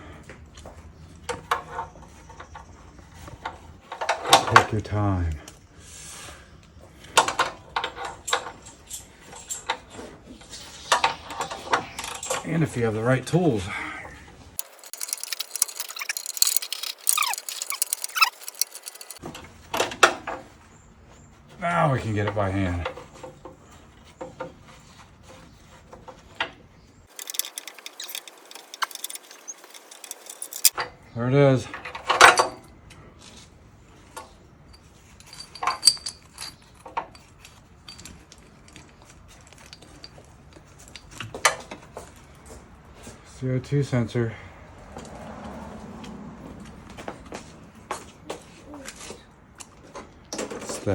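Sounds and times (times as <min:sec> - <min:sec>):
metal tools clinking: 0:14.6 - 0:19.2, 0:27.1 - 0:30.7, 0:35.1 - 0:38.2
wrench clicking on metal: 0:14.6 - 0:19.2, 0:27.1 - 0:30.7.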